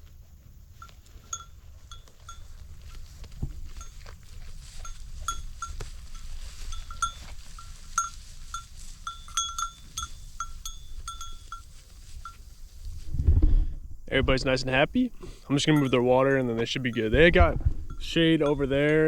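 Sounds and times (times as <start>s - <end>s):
sheep bell clanking: 0.8s - 12.6s, 14.2s - 19.0s
low steady rumble: 12.6s - 19.0s.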